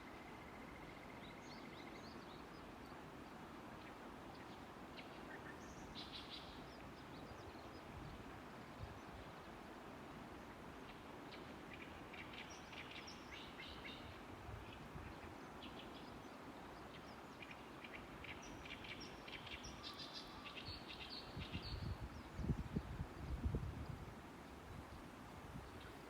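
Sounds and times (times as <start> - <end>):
steady background hiss: 0.0 - 26.0
small birds chirping: 0.4 - 24.6.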